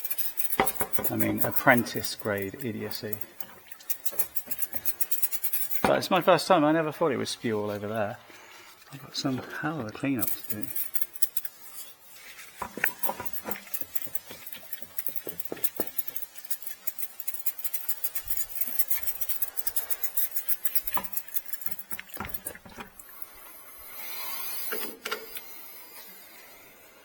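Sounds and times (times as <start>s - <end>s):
tools clicking and clinking: 0.0s - 6.1s, 10.0s - 23.5s, 24.6s - 25.6s
short hiss: 23.4s - 26.7s.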